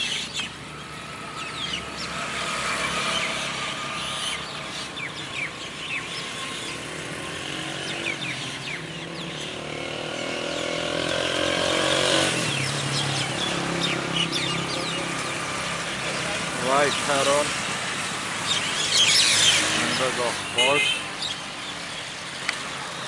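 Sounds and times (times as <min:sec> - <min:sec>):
vehicle engine passing: 0:00.0 - 0:05.1, 0:06.2 - 0:20.5
small birds chirping: 0:00.0 - 0:23.0.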